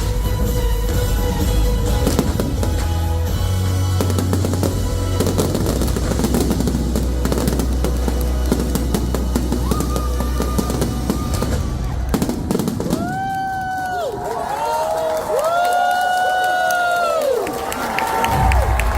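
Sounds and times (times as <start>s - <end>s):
loud show music with bass: 0.0s - 12.6s
fireworks crackling and bursting: 0.0s - 16.1s
crowd whistling: 0.6s - 18.9s.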